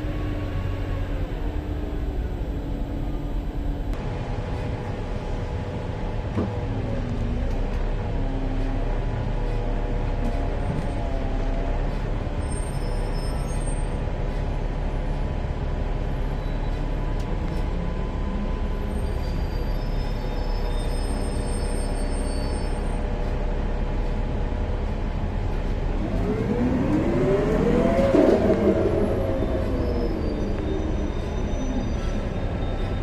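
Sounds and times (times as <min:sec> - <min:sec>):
bus running and road rumble: 0:00.0 - 0:33.0.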